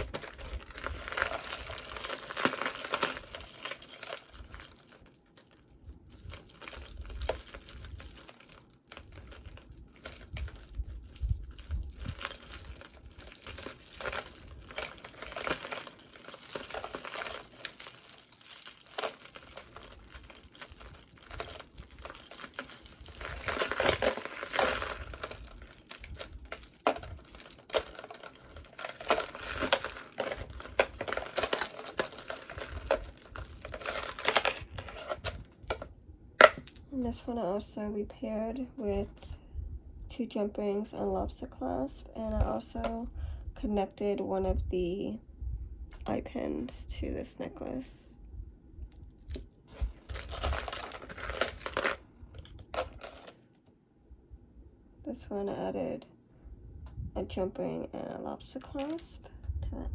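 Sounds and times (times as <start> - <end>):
rustling: 0.0 - 36.9, 49.2 - 53.7
metal jewelry clinking: 0.0 - 37.0, 48.8 - 53.7, 58.8 - 59.2.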